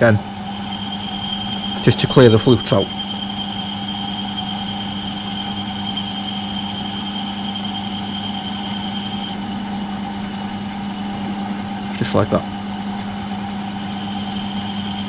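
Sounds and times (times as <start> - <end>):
milling machine drilling metal: 0.0 - 15.0
thin high whine: 0.0 - 15.0.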